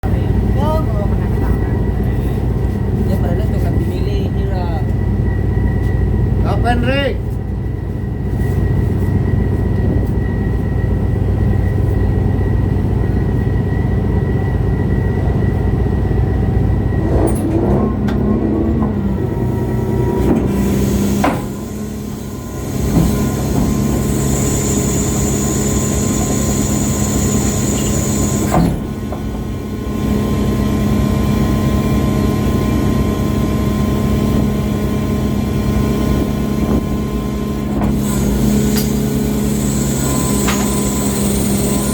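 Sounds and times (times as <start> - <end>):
ship engine drone: 0.0 - 41.9
thin high whine: 19.7 - 41.9.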